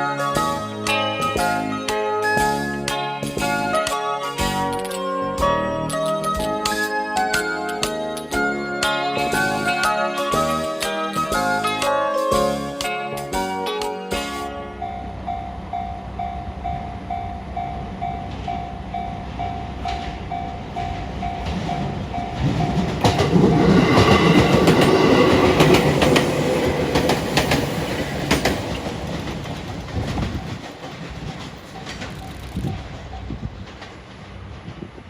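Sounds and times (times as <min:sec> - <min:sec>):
level crossing warning bell: 0:14.4 - 0:33.6
train wheels clicking over rail joints: 0:18.2 - 0:35.0.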